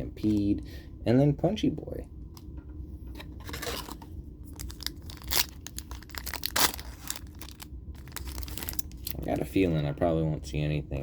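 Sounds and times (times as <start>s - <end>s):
foil wrapper crinkling: 3.5s - 9.4s
foil wrapper ripping: 3.6s - 9.3s.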